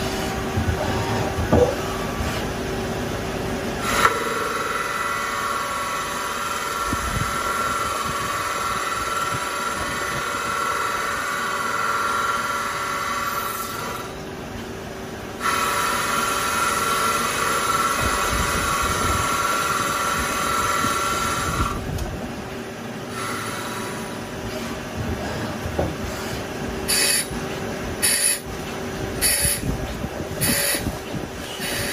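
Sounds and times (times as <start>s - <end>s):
lathe machining metal: 0.0s - 14.4s, 15.4s - 21.6s.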